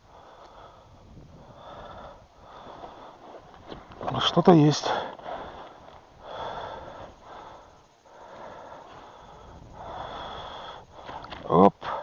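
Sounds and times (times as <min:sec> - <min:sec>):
person breathing heavily: 0:00.0 - 0:03.9, 0:04.8 - 0:12.0.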